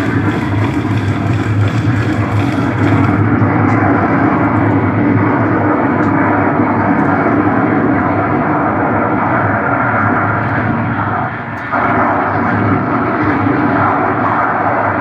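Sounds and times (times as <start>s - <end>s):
loud rushing rumble: 0.0s - 15.0s.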